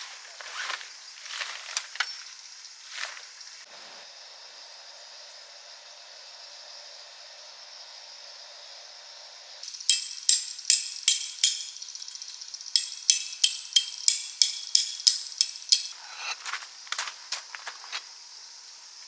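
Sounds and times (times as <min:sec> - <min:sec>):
utensil tapping a dish: 0:09.6 - 0:16.0.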